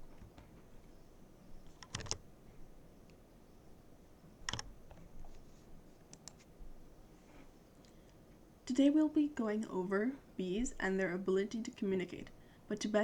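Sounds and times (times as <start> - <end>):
computer key clicks: 1.7 - 2.2, 4.5 - 5.0, 6.1 - 6.4.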